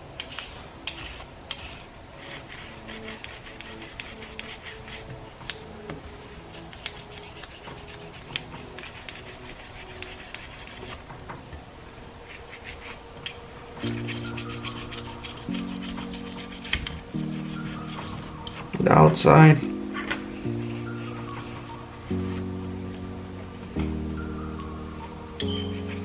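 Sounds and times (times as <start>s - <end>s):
background music: 0.0s - 26.0s
toothbrush scrubbing metal: 0.2s - 5.6s, 6.4s - 11.0s, 12.2s - 13.0s, 13.8s - 18.8s, 20.0s - 22.5s, 24.9s - 26.0s.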